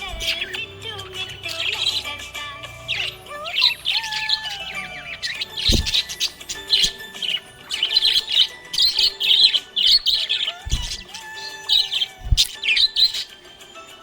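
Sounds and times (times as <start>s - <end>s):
parrots chirping: 0.0s - 14.0s
low thumps: 5.6s - 6.1s, 10.7s - 11.0s, 12.2s - 12.5s.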